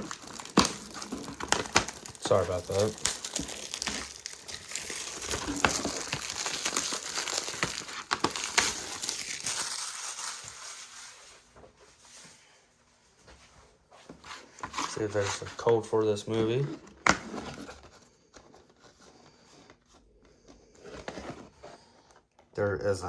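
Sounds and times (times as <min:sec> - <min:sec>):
plastic wrap crinkling and tearing: 0:00.0 - 0:11.5.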